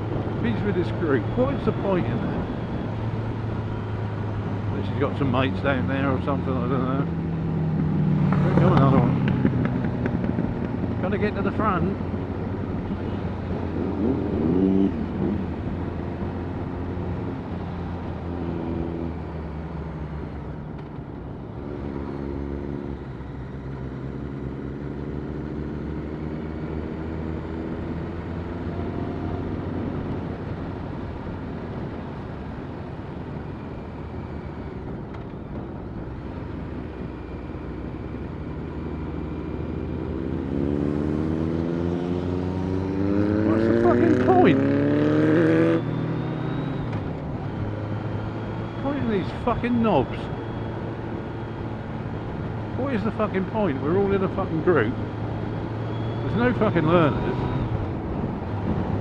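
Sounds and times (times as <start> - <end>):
motorcycle engine running: 7.2 - 11.6.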